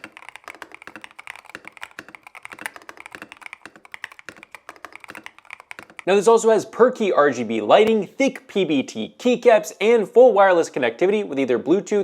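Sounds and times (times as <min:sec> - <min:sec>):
mechanical keyboard typing: 0:00.0 - 0:06.2.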